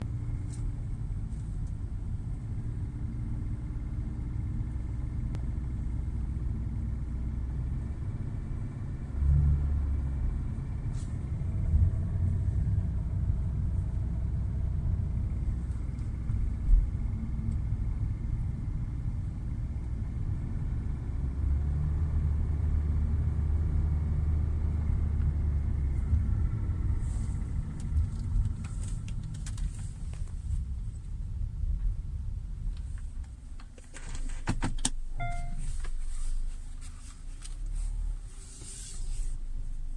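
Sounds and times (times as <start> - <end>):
car engine rumble from cabin: 0.0 - 39.9.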